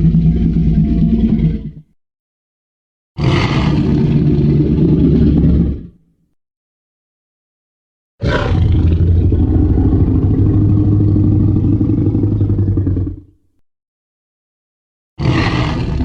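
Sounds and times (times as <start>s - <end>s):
low-pitched dinosaur roar: 0.0s - 1.9s, 3.2s - 6.0s, 8.2s - 13.4s, 15.2s - 16.0s.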